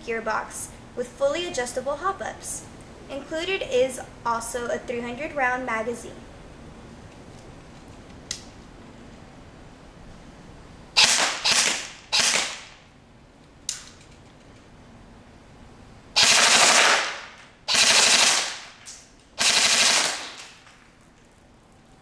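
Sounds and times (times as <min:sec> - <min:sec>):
airsoft rifle firing bursts: 0:11.0 - 0:12.8, 0:16.2 - 0:18.8, 0:19.4 - 0:20.6.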